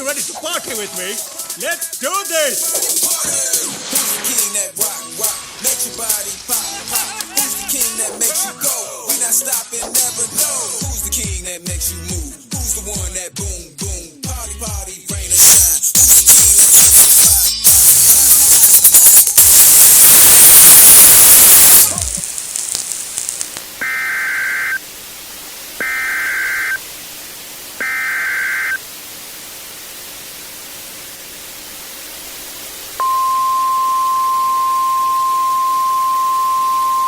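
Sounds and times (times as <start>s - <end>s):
loud tv static: 0.0s - 12.0s, 15.3s - 37.0s
screeching data tones: 15.4s - 24.9s, 25.8s - 26.8s, 27.8s - 28.8s.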